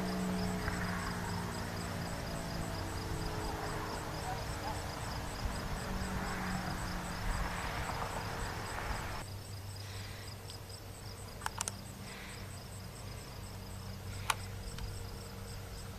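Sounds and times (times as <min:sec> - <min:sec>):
insects chirping: 0:00.0 - 0:15.9
noisy rushing hiss: 0:02.8 - 0:10.3
sharp clicks: 0:11.4 - 0:11.8.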